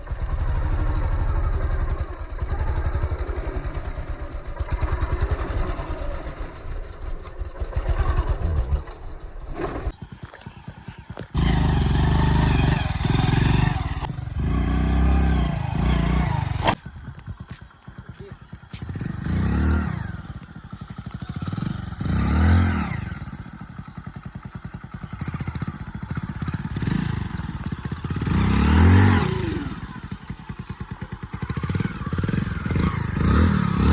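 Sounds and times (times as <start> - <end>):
motorcycle engine revving: 0.0 - 33.9.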